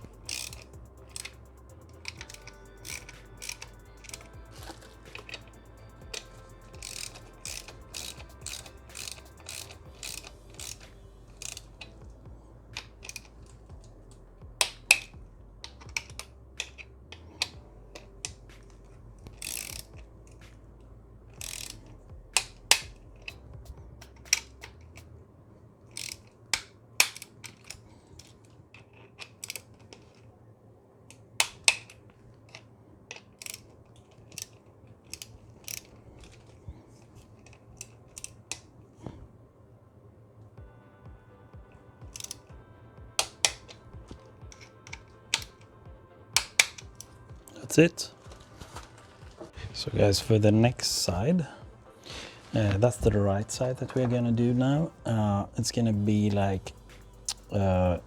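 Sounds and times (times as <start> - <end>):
ratchet wrench clicking: 0.0 - 20.7, 21.3 - 25.1, 25.9 - 28.4, 29.0 - 30.2, 31.4 - 36.6, 42.0 - 42.5, 43.2 - 45.6, 46.4 - 47.3, 55.8 - 58.0
sharp metal clicks: 0.0 - 25.2, 25.9 - 30.2, 31.1 - 39.2, 42.0 - 48.4, 55.6 - 58.0.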